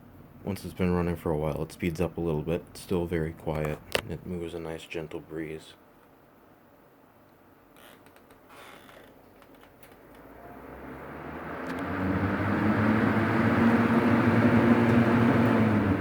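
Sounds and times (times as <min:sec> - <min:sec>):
motor vehicle passing: 0:10.2 - 0:16.0.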